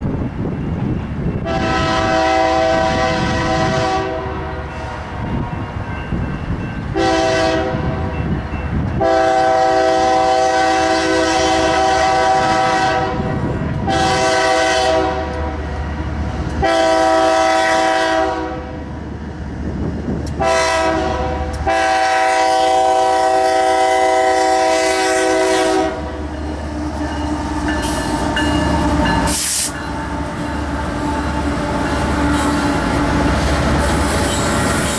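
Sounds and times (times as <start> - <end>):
train wheels on rails: 0.0 - 34.9
locomotive air horn blasts: 1.4 - 5.2, 7.0 - 8.1, 9.0 - 15.6, 16.6 - 18.9, 20.4 - 26.2, 27.7 - 29.8.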